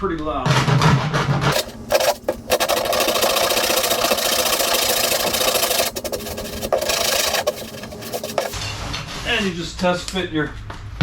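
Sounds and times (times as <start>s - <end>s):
file rasping on plastic: 1.5s - 8.6s.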